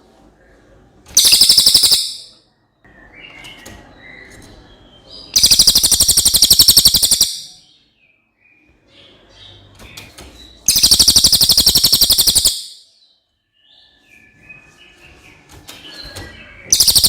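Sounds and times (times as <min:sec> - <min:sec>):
faint bird chirps: 0:00.5 - 0:17.0
bird trilling: 0:01.2 - 0:02.4, 0:05.4 - 0:07.6, 0:10.7 - 0:12.9, 0:16.6 - 0:17.0.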